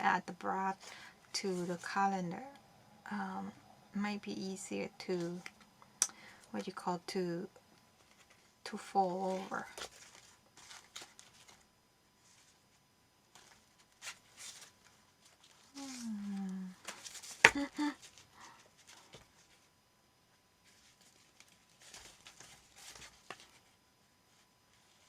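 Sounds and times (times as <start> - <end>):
paper rustling: 9.2 - 12.7, 20.6 - 25.0
falling hum-like vocal sound: 15.8 - 16.8.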